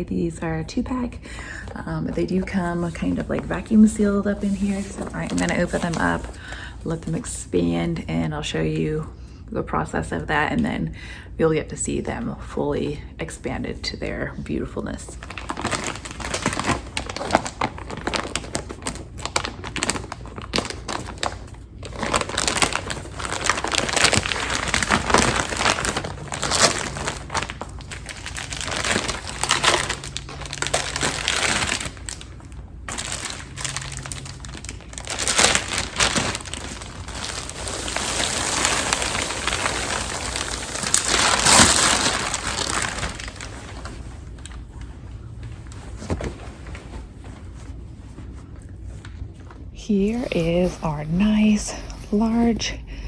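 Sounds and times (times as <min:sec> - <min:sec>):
plastic packaging crinkling: 0:01.4 - 0:07.3, 0:15.0 - 0:50.5.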